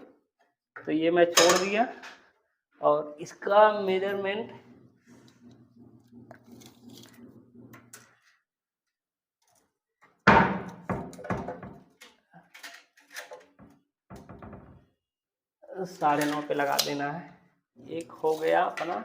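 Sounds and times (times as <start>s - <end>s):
tools knocking against wooden door: 4.6s - 8.2s, 10.3s - 11.9s, 14.1s - 14.8s.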